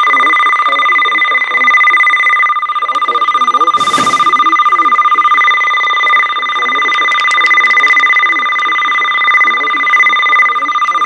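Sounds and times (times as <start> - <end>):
burst of static: 3.8 - 5.0.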